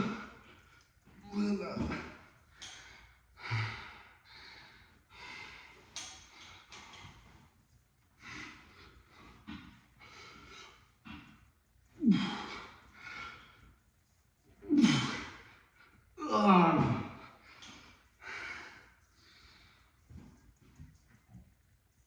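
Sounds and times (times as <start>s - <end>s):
man grunting: 1.2s - 2.2s, 12.0s - 12.7s, 14.7s - 15.4s, 16.2s - 17.2s
man breathing hard: 2.5s - 6.7s, 17.4s - 20.0s.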